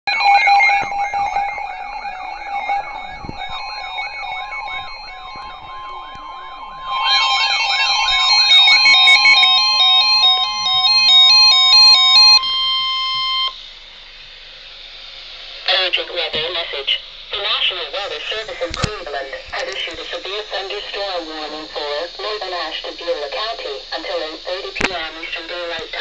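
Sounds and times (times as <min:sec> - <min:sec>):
fast stepping beeping tones: 0:00.1 - 0:13.6
siren wailing up and down: 0:00.1 - 0:13.6
steady attention tone: 0:00.1 - 0:14.4, 0:15.4 - 0:26.0
steady held electronic tones: 0:00.1 - 0:26.0.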